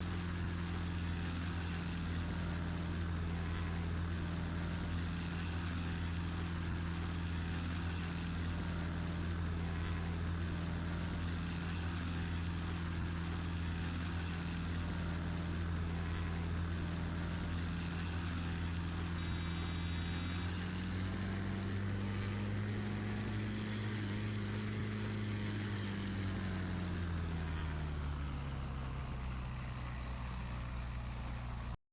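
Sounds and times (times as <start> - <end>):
propeller plane engines droning: 0.0 - 31.7.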